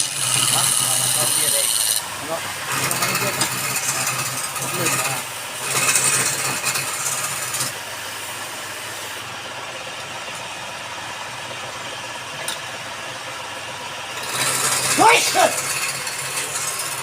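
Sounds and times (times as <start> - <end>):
tool scraping spinning wood: 0.0 - 7.8, 14.1 - 17.0
wood lathe motor humming: 0.0 - 9.2, 14.1 - 17.0.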